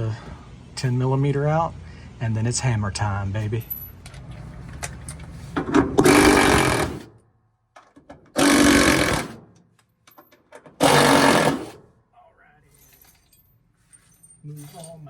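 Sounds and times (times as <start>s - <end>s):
power driver whirring: 6.0s - 7.1s, 8.4s - 9.4s, 10.8s - 11.8s.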